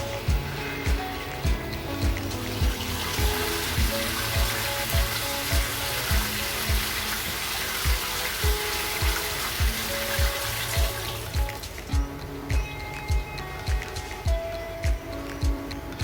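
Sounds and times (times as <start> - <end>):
background music with steady beat: 0.0 - 16.0
water rushing into washing machine: 2.1 - 11.9.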